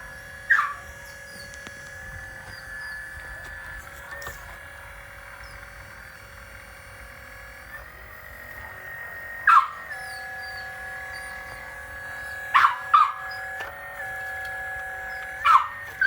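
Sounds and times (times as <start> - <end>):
hydraulic pump whining: 0.0 - 16.0
dog barking: 0.5 - 0.9, 9.5 - 13.7, 15.0 - 16.0.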